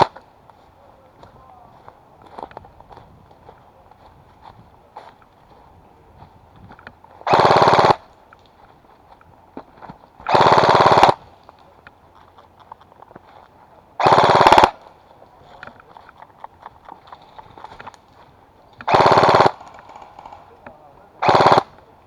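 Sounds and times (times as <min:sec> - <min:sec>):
airsoft gun full-auto bursts: 0:07.2 - 0:08.1, 0:10.2 - 0:11.3, 0:14.0 - 0:14.9, 0:18.8 - 0:22.0.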